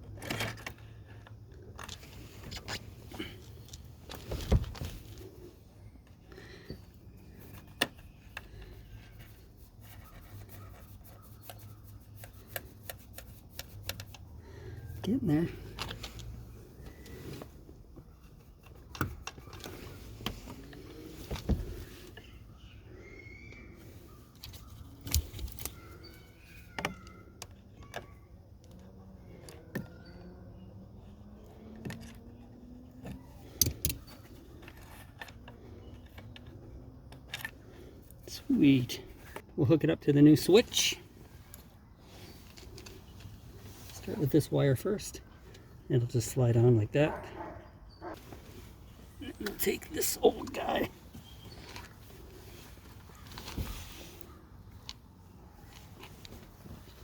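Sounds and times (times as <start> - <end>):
wires rubbing and clicking: 7.2 - 14.4.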